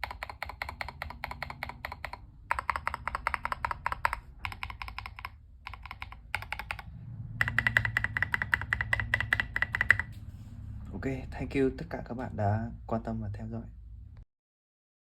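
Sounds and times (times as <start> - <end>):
fast typing on mechanical keyboard: 0.0 - 10.1.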